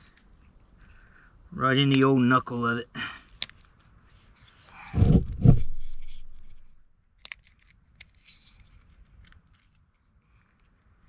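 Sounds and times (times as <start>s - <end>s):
knife carving wood: 3.4s - 11.0s.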